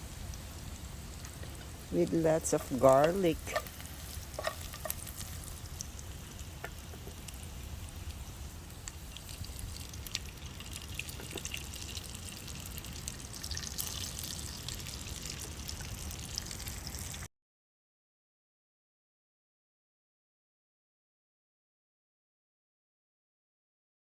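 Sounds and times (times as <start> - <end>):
rice sizzling in a frying pan: 0.0 - 17.3.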